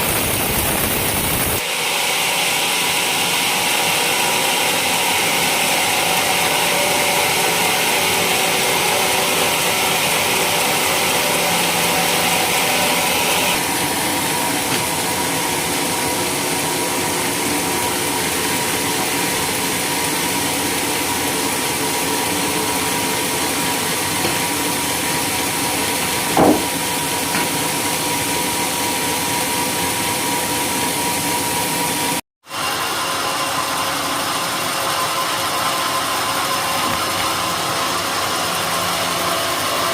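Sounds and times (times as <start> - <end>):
sawmill machine hum: 0.0 - 39.9
knock: 26.3 - 26.7.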